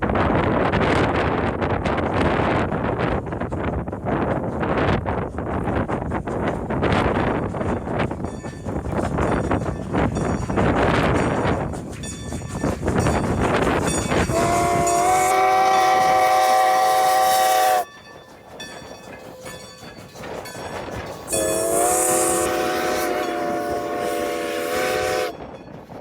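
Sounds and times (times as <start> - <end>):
train running and rail clatter: 0.0 - 26.0
train whistle chord blasts: 14.3 - 17.9, 21.3 - 25.5.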